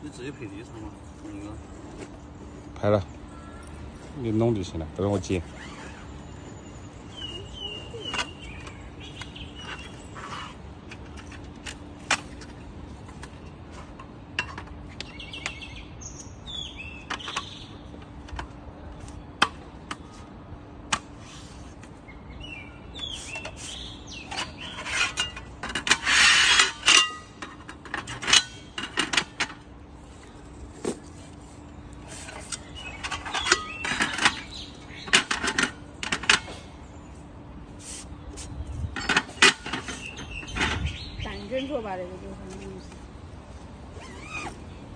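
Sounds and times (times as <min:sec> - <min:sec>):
birds chirping: 0:00.0 - 0:11.4, 0:14.8 - 0:44.9
metal parts rattling: 0:24.3 - 0:29.6, 0:32.3 - 0:36.5.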